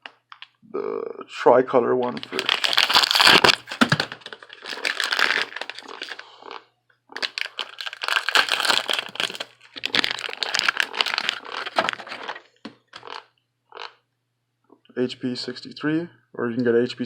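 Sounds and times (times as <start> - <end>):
packaging crinkling: 2.2 - 6.2, 7.2 - 12.4.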